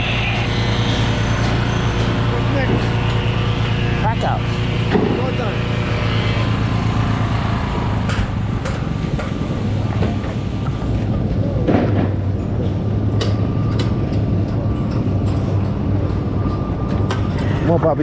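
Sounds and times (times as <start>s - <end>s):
low machine drone: 0.0s - 18.0s
sharp knocks and clanks: 0.1s - 10.8s.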